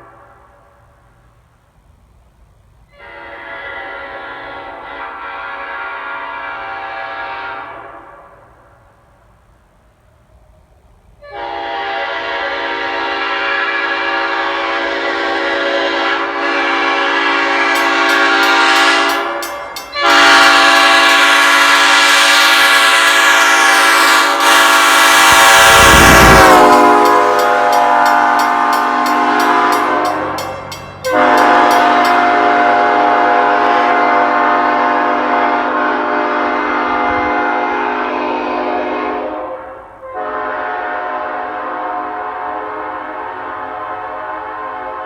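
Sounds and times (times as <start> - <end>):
locomotive air horn blasts: 2.9 - 8.8, 11.2 - 45.0
low rush of air: 25.3 - 31.1.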